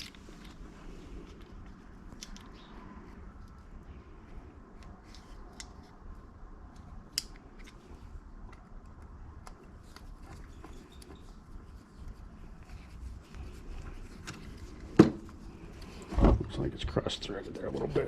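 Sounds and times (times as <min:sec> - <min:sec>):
screwdriver clicking and scraping: 0:02.1 - 0:02.6, 0:06.7 - 0:11.3.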